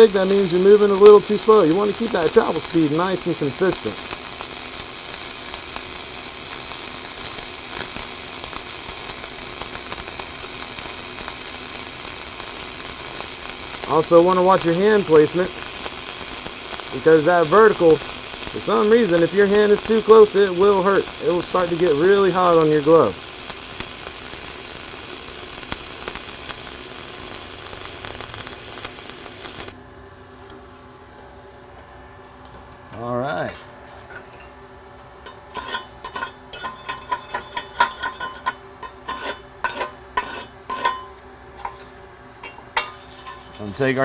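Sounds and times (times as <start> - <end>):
small welding pops: 0.0 - 29.8
welding arc crackling sizzle: 0.0 - 29.8, 42.5 - 44.0.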